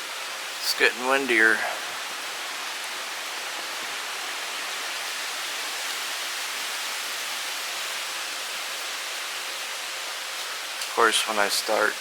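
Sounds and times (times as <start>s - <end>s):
rain and wind hiss: 0.0s - 12.0s.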